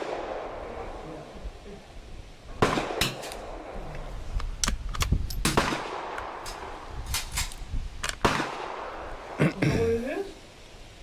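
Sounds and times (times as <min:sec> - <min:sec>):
rifle shots: 0:02.6 - 0:03.6, 0:05.4 - 0:07.6, 0:08.2 - 0:08.9.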